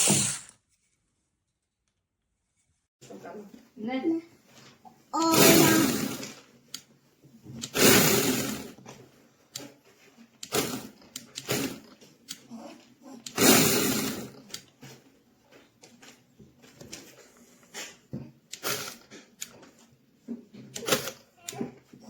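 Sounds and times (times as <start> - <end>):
electric chainsaw bursts: 5.2 - 6.4, 7.7 - 8.8, 10.4 - 11.8, 13.3 - 14.4.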